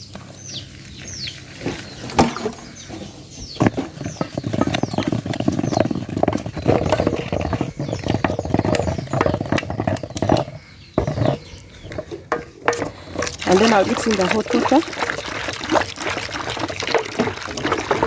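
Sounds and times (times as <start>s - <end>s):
bird chirps: 0.0s - 12.3s
stirring and sloshing in water: 0.1s - 18.0s.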